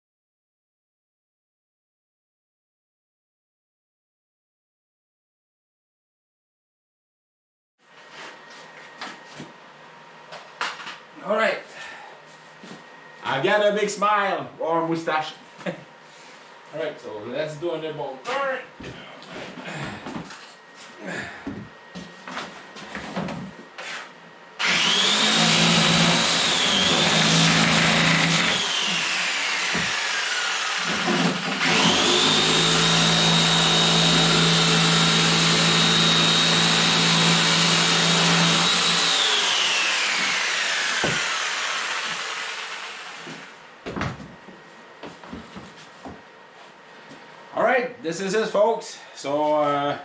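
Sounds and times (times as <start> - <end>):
power tool motor whining: 24.6 - 43.6.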